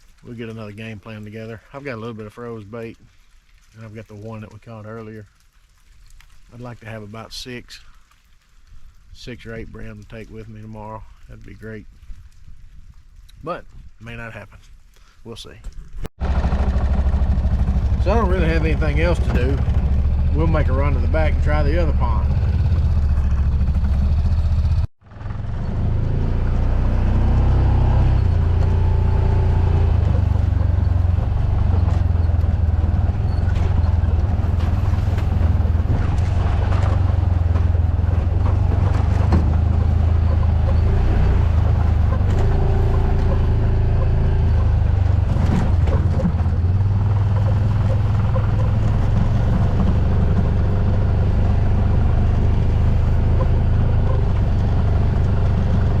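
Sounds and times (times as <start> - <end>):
vehicle engine droning while driving: 16.2 - 56.0.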